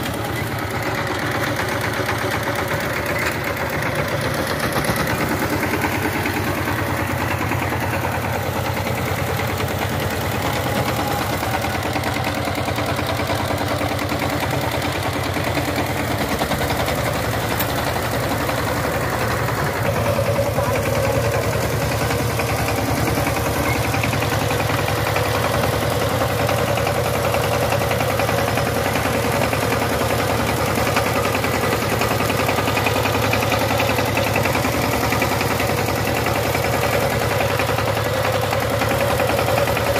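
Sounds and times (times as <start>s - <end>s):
diesel engine running: 0.0s - 39.9s.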